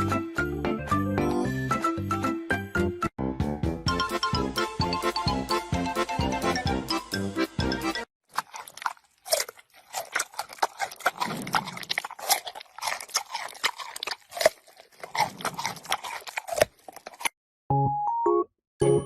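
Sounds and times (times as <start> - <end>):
pet crunching hard food: 8.2 - 17.4.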